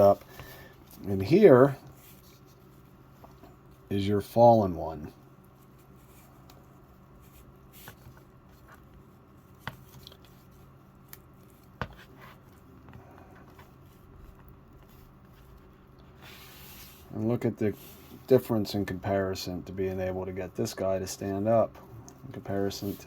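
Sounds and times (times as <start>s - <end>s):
low room hum: 0.0s - 23.0s.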